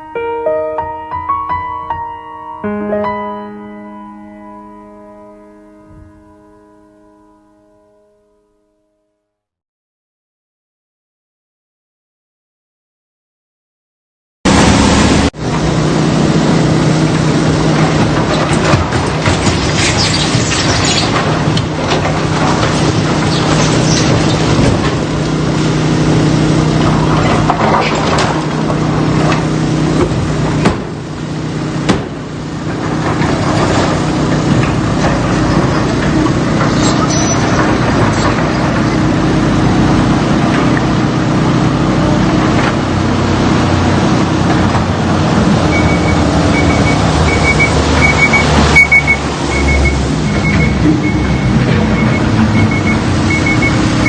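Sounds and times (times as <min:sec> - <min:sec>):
heavy vehicle engine running: 0:14.5 - 0:54.0
high-pitched beeps: 0:45.7 - 0:53.8.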